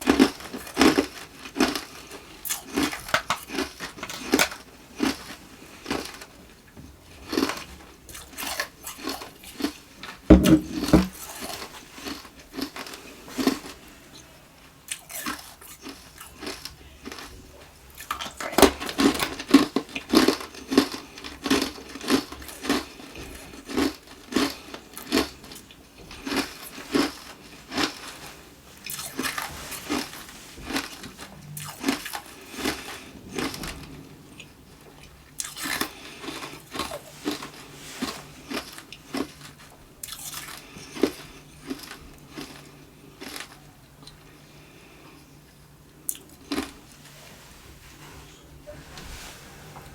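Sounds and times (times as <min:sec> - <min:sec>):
chewing ice crunches: 0:00.0 - 0:06.3, 0:07.2 - 0:09.8, 0:14.9 - 0:28.1, 0:28.8 - 0:33.8, 0:35.4 - 0:44.2, 0:46.1 - 0:46.7.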